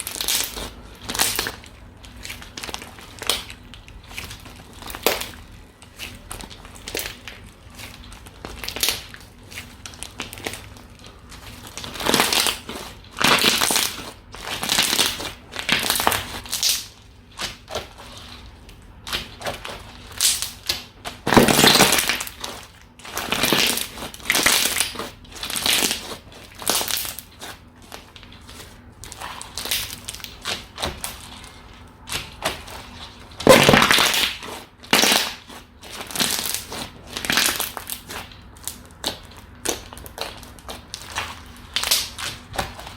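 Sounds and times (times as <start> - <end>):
slime squelching by hand: 0.0 - 42.9.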